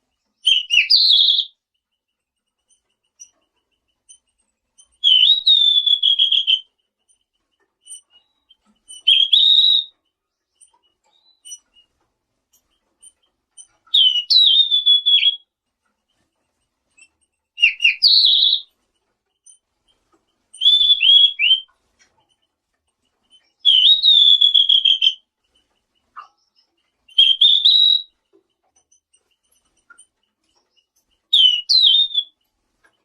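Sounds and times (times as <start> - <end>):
songbird whistling with trills: 0.4 - 1.6, 4.9 - 6.7, 7.9 - 10.0, 11.0 - 11.7, 13.6 - 15.5, 17.0 - 18.7, 20.6 - 21.7, 23.4 - 25.3, 26.2 - 28.2, 31.3 - 32.4.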